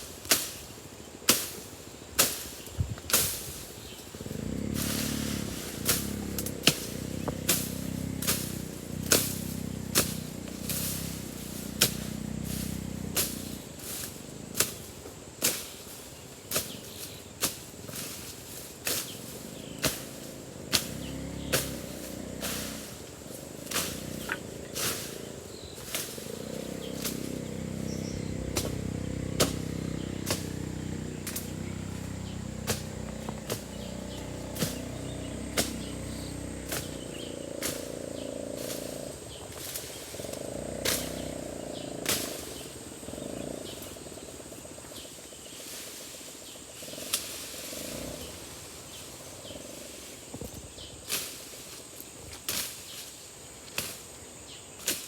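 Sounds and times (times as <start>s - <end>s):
high insect drone: 0.0s - 55.0s
low rumbling noise: 4.2s - 14.6s, 19.1s - 43.8s.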